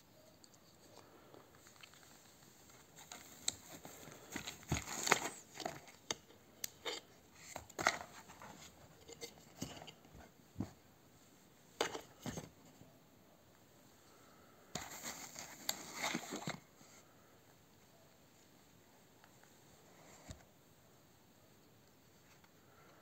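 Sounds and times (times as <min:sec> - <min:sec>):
objects and packaging being handled: 0:00.1 - 0:10.8, 0:11.6 - 0:12.9, 0:14.7 - 0:17.1.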